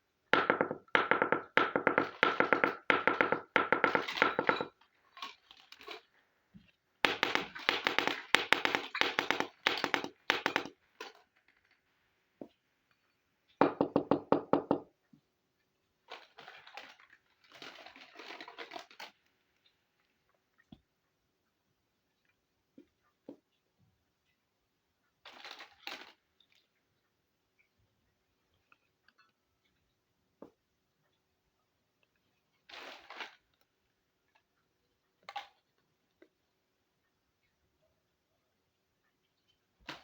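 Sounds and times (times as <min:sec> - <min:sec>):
toy kitchen pieces tapping: 0:00.4 - 0:06.0, 0:07.1 - 0:11.8.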